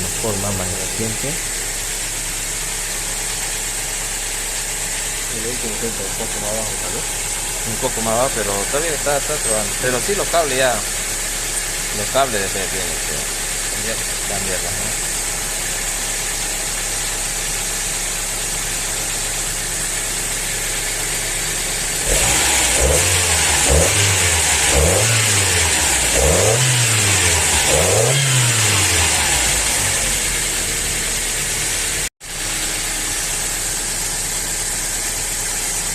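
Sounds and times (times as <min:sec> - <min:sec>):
car engine idling and revving: 0:00.0 - 0:35.9.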